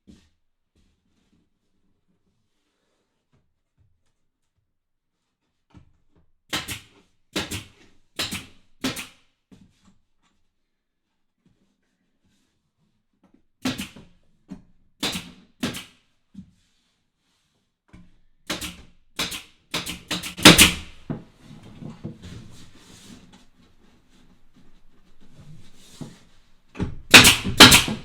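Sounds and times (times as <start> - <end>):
faint scraping and shuffling: 0.0 - 6.2, 9.5 - 13.5, 16.3 - 18.0, 21.2 - 26.7.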